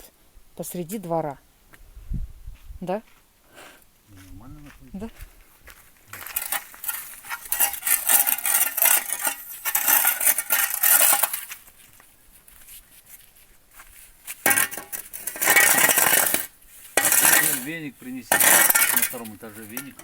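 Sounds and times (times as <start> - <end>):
metal shovel scraping sand: 6.1 - 11.7, 14.3 - 20.0.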